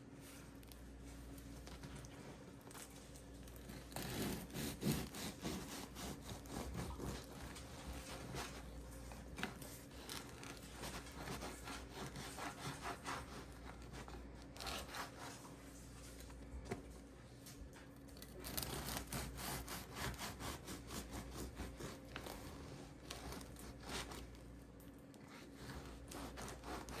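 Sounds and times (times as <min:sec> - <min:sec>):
bread knife sawing through crust: 0:03.7 - 0:08.7, 0:09.8 - 0:15.4, 0:18.4 - 0:24.3, 0:25.3 - 0:27.0.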